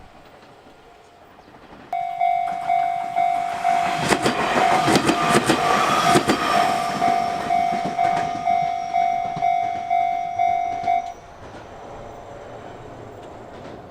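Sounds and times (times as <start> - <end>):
train wheels clacking: 0.0 - 13.9
level crossing warning bell: 2.0 - 11.4.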